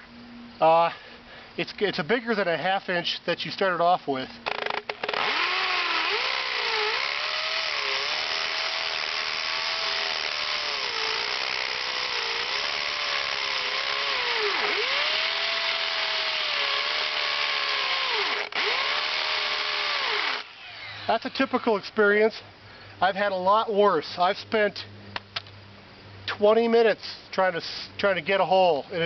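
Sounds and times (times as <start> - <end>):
hammer drill boring into concrete: 4.4 - 21.6.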